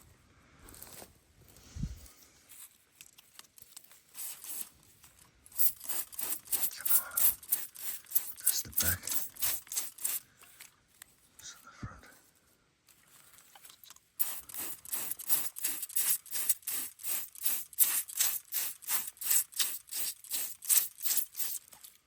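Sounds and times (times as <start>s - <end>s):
scrubbing metal buckle: 2.6s - 10.7s, 13.6s - 22.0s.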